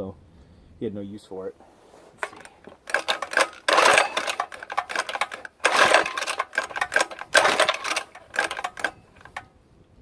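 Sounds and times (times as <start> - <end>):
recoil starter rope pulls: 1.6 - 9.5.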